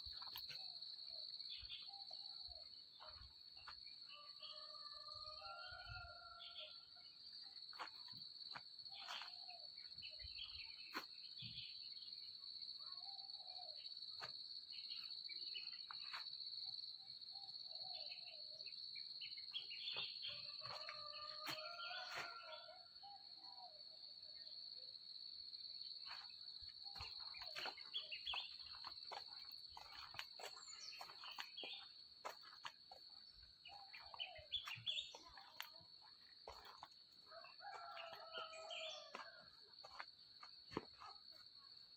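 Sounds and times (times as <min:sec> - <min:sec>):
insects trilling: 0:00.0 - 0:24.5, 0:25.2 - 0:41.9
bird calls: 0:26.9 - 0:31.9, 0:33.2 - 0:35.8.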